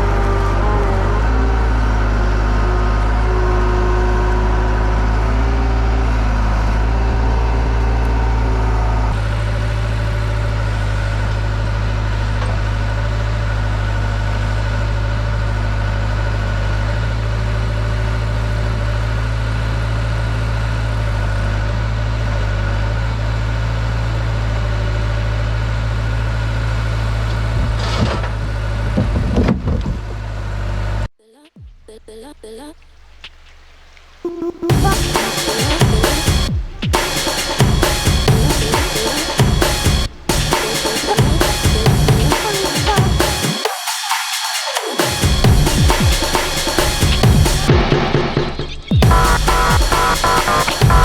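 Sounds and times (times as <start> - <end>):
diesel engine running: 0.0 - 31.1, 34.7 - 43.4, 49.0 - 51.0
knocks and clatter: 27.6 - 30.2.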